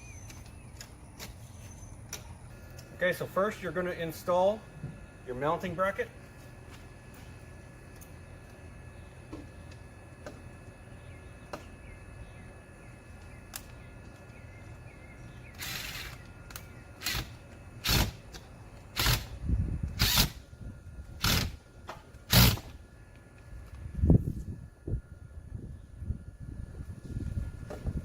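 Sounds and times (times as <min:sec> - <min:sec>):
wind noise on microphone: 0:19.0 - 0:21.6, 0:23.8 - 0:28.0.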